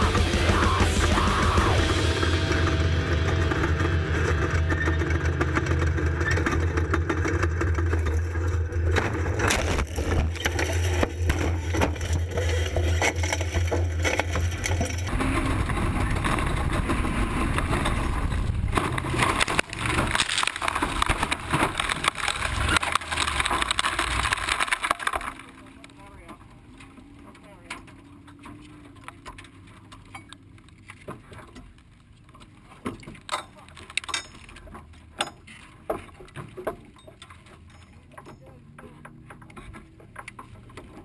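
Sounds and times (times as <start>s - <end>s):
off-road truck engine drone: 0.0s - 41.0s
rattling and scraping: 0.0s - 41.0s
clatter of knocks and bangs: 3.2s - 25.4s.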